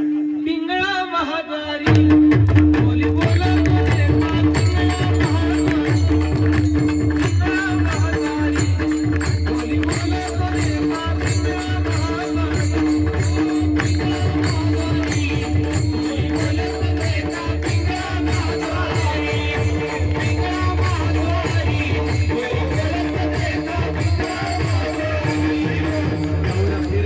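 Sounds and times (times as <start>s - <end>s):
rattling hand percussion: 1.9s - 27.0s.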